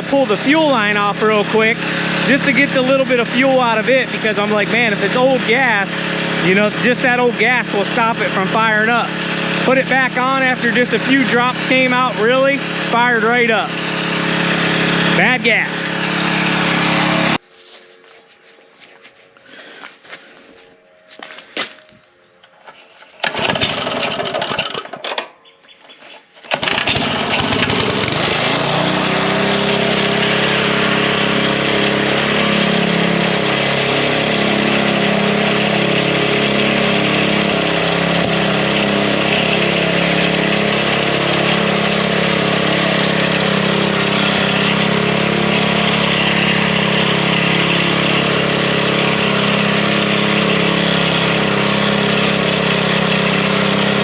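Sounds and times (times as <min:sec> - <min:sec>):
small gas engine running: 0:00.0 - 0:20.1, 0:23.1 - 0:25.2, 0:26.5 - 0:54.0
starter cord pull: 0:23.2 - 0:25.3, 0:26.0 - 0:28.3.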